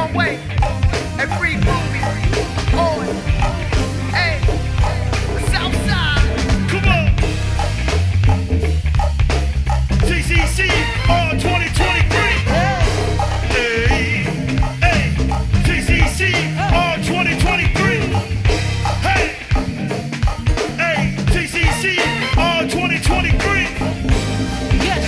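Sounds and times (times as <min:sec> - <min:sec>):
heavy bass and drums: 0:00.0 - 0:25.0
live band playing a groove: 0:00.0 - 0:25.0
person singing: 0:10.0 - 0:18.3.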